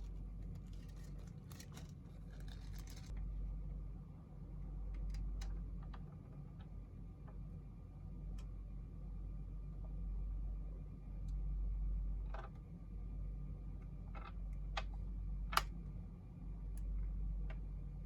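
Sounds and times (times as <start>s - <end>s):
steady low hum: 0.0s - 18.0s
packaging rustling and crinkling: 0.4s - 3.1s.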